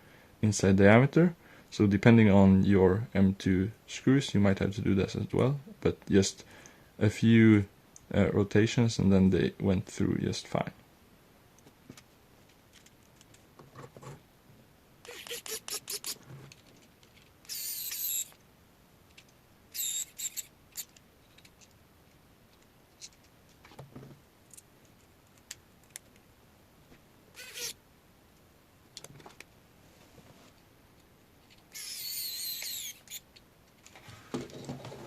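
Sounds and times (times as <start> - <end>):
brief high squeaks: 15.0 - 16.2, 17.5 - 18.3, 27.4 - 27.8, 31.8 - 33.2.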